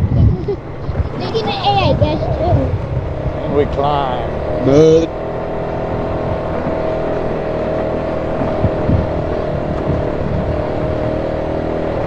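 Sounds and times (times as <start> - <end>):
off-road vehicle engine under load: 0.0 - 12.0
low knocks: 8.2 - 11.2.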